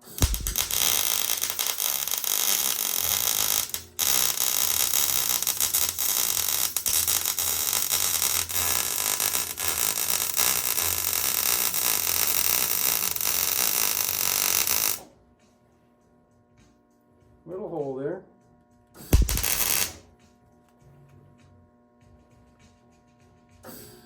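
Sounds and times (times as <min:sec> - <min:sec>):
arc welder crackling sizzle: 0:00.0 - 0:15.1, 0:19.2 - 0:20.0.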